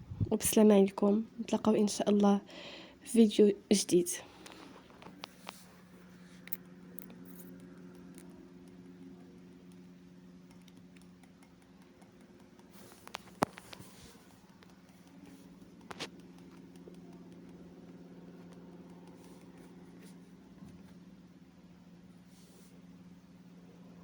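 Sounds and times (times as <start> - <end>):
faint low hum: 0.0 - 24.0
small sharp clicks: 10.5 - 19.6.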